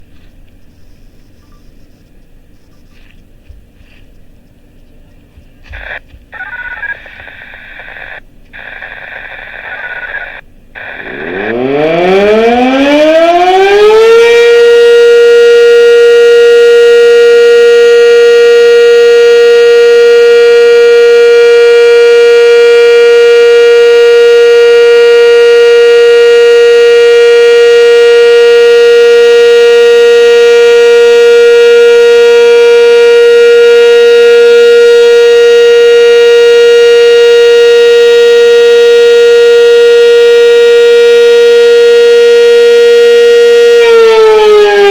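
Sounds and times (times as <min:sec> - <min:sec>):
warning siren winding up: 0:10.0 - 0:44.9.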